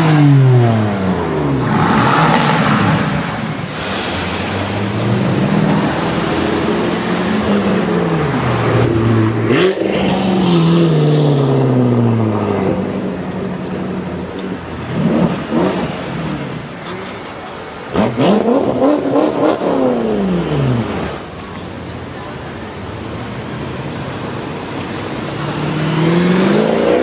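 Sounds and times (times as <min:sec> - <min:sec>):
car driving past: 0:01.3 - 0:13.0.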